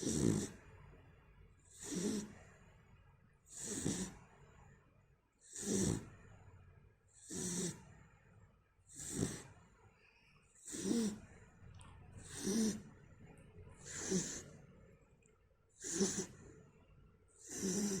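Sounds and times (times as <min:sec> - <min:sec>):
snoring: 0:00.0 - 0:00.6, 0:01.7 - 0:02.5, 0:03.5 - 0:04.4, 0:05.4 - 0:06.2, 0:07.2 - 0:07.9, 0:08.9 - 0:09.6, 0:10.6 - 0:11.4, 0:12.2 - 0:12.9, 0:13.8 - 0:14.6, 0:15.8 - 0:16.5, 0:17.4 - 0:18.0.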